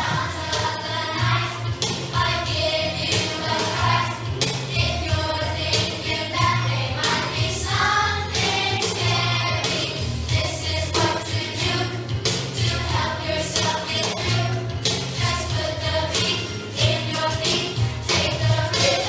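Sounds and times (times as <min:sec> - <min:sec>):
bass line and beat: 0:00.0 - 0:03.1
voices singing: 0:00.0 - 0:19.0.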